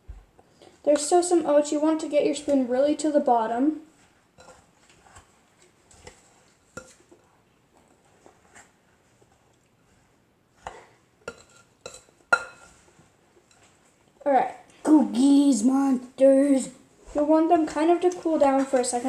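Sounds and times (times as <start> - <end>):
spoon scraping a pot: 4.4 - 5.3, 10.6 - 13.8.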